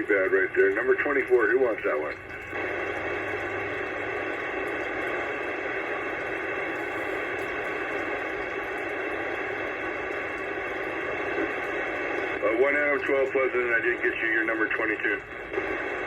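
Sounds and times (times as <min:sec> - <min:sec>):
radio static hiss: 0:00.0 - 0:16.0.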